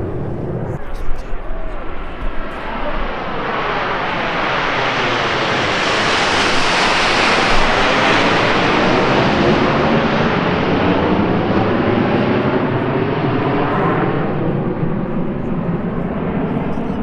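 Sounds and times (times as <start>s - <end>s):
jets flying past: 0.0s - 17.0s.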